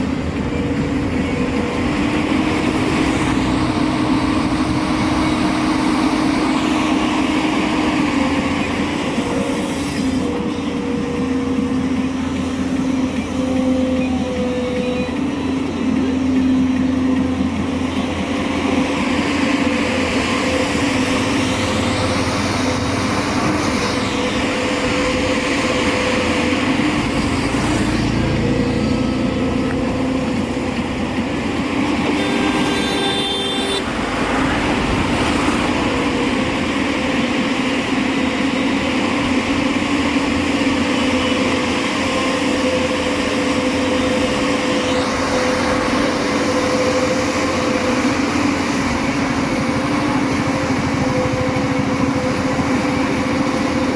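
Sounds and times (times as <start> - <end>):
backhoe diesel engine droning: 0.0 - 53.9.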